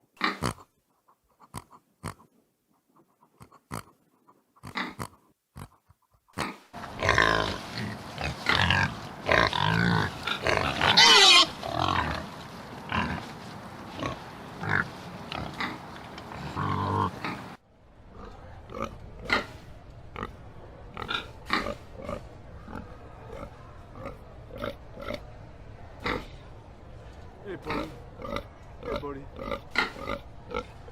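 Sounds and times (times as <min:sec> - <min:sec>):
pigs grunting: 0:00.2 - 0:00.8, 0:03.2 - 0:25.3, 0:26.0 - 0:26.5, 0:27.5 - 0:30.9
pigs squealing: 0:06.4 - 0:12.2
steady background noise: 0:06.4 - 0:30.9.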